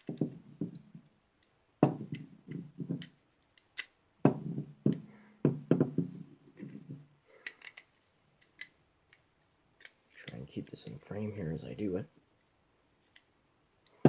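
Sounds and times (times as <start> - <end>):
metal pistol parts clicking: 0.0 - 4.0, 6.6 - 10.4, 13.0 - 14.0.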